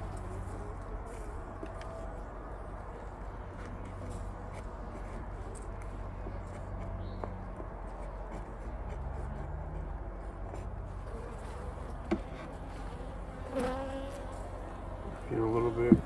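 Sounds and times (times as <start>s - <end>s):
honeybees buzzing: 10.6s - 16.0s.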